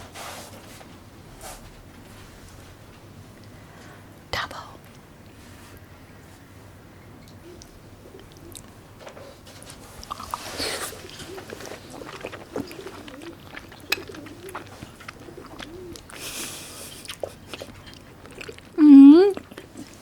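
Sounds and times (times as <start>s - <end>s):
food clicking and rustling: 8.2s - 16.3s, 16.9s - 18.8s
dove cooing: 10.4s - 17.0s.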